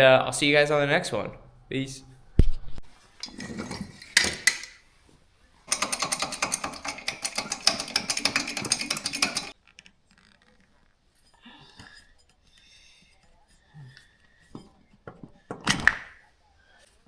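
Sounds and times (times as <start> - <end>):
fast mechanical rattling clatter: 3.2 - 4.8, 5.7 - 9.6.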